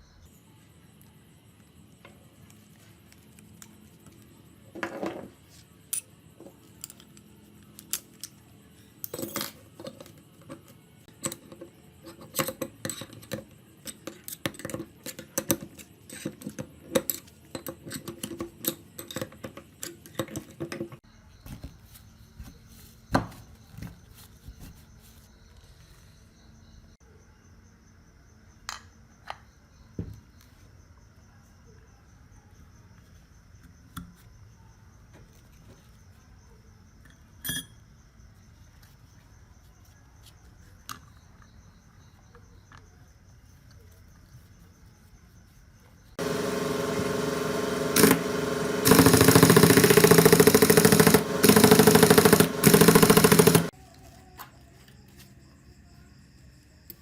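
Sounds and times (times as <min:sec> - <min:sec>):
power tool motor running: 0:46.2 - 0:53.7.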